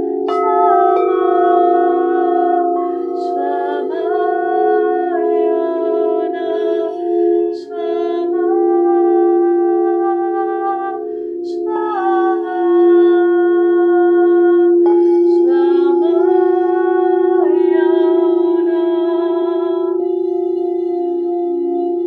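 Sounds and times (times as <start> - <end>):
woman toning held notes: 0.0 - 8.7
singing bowls ringing: 0.0 - 22.0.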